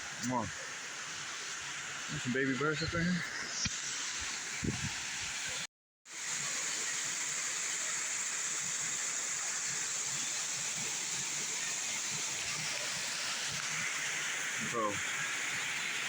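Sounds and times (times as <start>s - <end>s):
waterfall rushing: 6.2s - 16.0s.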